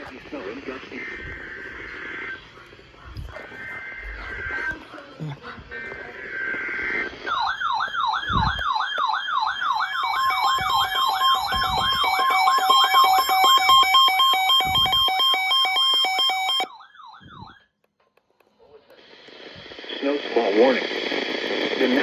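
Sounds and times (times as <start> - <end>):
electronic wailing siren: 5.7 - 17.7
steady alert tones: 9.7 - 16.7.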